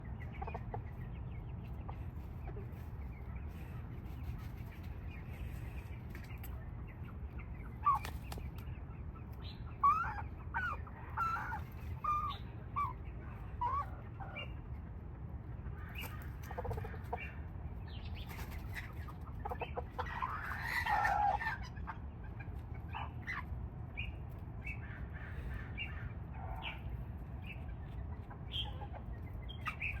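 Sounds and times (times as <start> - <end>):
chickens clucking: 0.0 - 30.0
low background rumble: 0.0 - 30.0.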